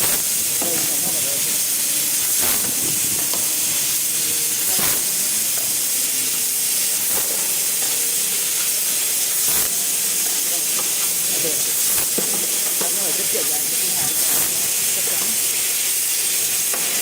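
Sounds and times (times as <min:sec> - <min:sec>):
laser cutting machine hissing: 0:00.0 - 0:17.0.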